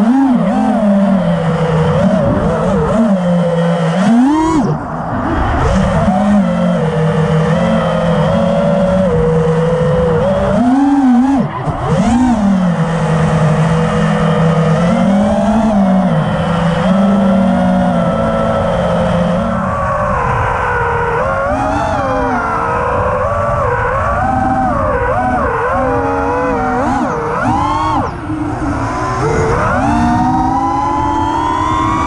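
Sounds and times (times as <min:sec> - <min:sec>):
drone motors whining: 0:00.0 - 0:32.0.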